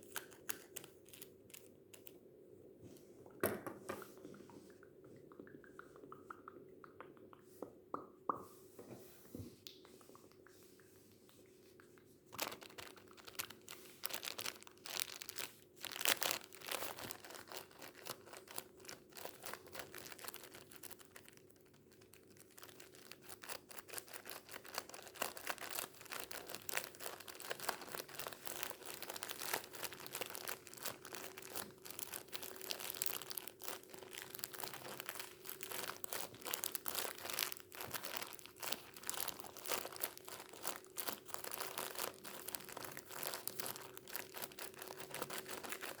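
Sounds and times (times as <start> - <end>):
tissues crinkling: 0.0 - 2.2, 11.2 - 46.0.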